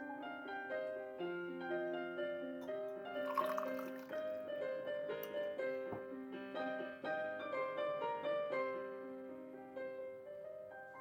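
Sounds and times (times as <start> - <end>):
gentle piano music: 0.0 - 11.0.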